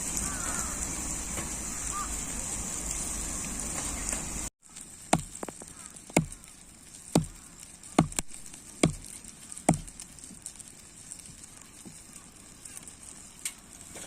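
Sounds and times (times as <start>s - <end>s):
sharp knocks: 5.1s - 6.4s, 7.2s - 7.4s, 8.0s - 10.0s.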